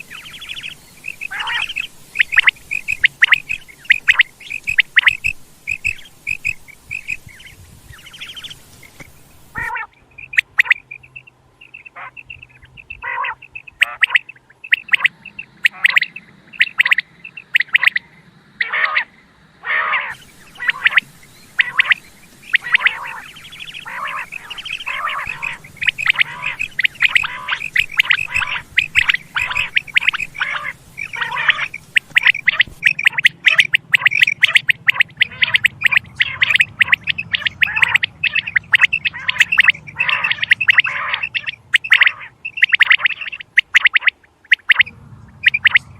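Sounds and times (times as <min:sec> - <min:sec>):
quail calling: 0:00.0 - 0:45.9.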